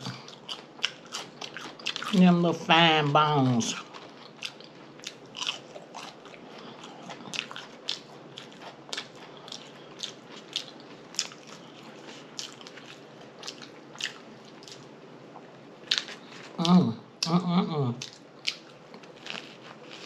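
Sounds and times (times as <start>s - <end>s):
chewing fish sandwich: 0.1s - 2.2s, 3.8s - 14.9s, 18.0s - 20.0s.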